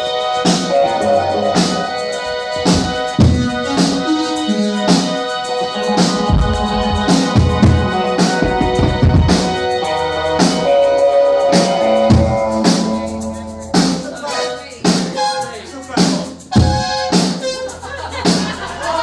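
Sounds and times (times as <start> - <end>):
sustained keyboard chords: 0.0 - 18.9
drum hits: 2.6 - 4.0, 5.1 - 9.8.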